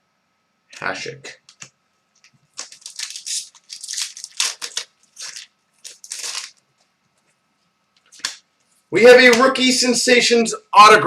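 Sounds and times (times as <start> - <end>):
card wrappers crinkling and rustling: 2.2 - 7.3, 8.0 - 8.4.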